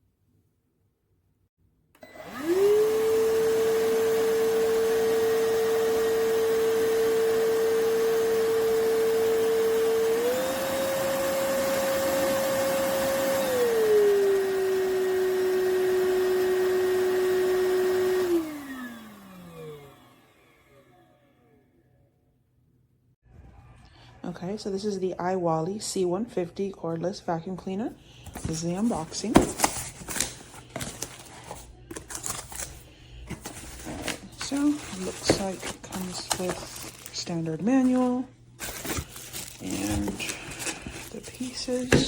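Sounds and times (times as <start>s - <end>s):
vacuum cleaner motor whining: 2.0s - 21.6s, 28.3s - 42.0s.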